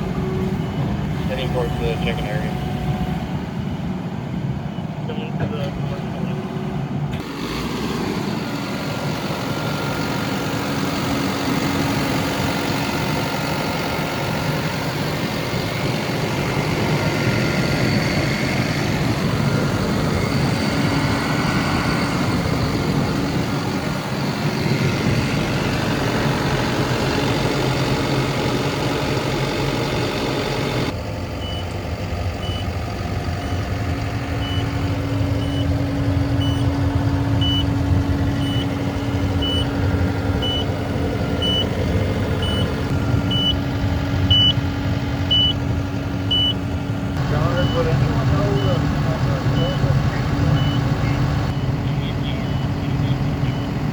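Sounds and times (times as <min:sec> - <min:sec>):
diesel engine running: 0:00.0 - 0:53.9
back-up alarm beeping: 0:01.2 - 0:03.3, 0:30.4 - 0:31.7, 0:32.3 - 0:46.6, 0:47.2 - 0:53.8.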